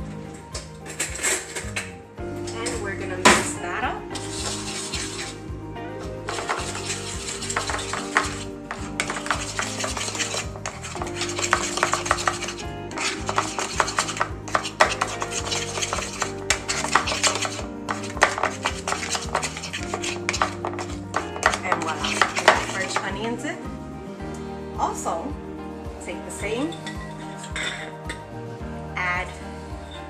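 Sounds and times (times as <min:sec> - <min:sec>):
spoon clinking and scraping bowl: 0:00.8 - 0:02.9, 0:04.1 - 0:05.4, 0:06.3 - 0:23.1, 0:26.7 - 0:28.2.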